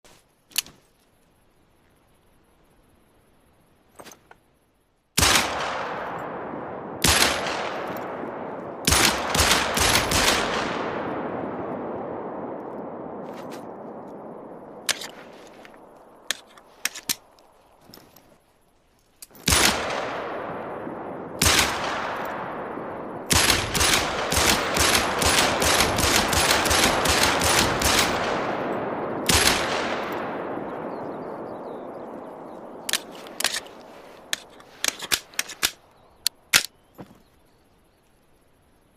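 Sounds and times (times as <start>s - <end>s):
pistol shots: 5.2s - 13.1s, 19.4s - 31.0s
sharp clicks: 32.8s - 36.8s.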